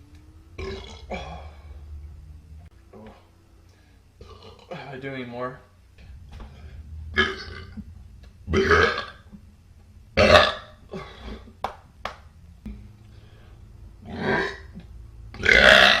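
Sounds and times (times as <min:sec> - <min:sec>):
person belching: 0:00.6 - 0:01.7, 0:04.2 - 0:04.9, 0:08.5 - 0:09.2, 0:10.2 - 0:11.5, 0:14.0 - 0:14.8, 0:15.4 - 0:16.0.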